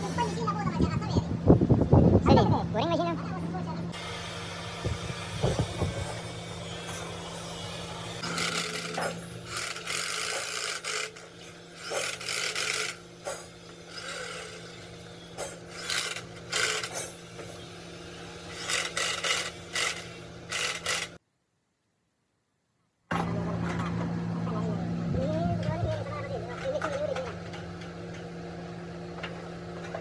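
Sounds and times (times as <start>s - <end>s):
tool filing metal: 4.0s - 17.2s, 18.2s - 21.2s.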